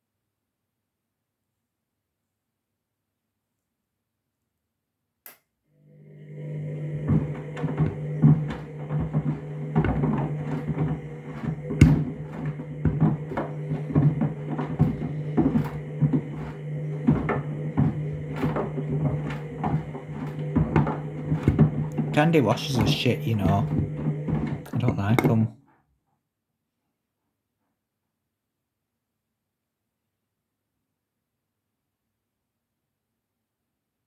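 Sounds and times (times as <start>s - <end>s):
washing machine motor hum: 5.8s - 25.5s
washing machine click: 7.1s - 25.4s.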